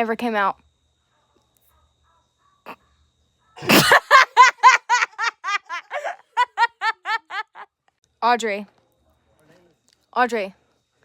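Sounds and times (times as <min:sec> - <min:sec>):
girl laughing: 0:03.6 - 0:07.6.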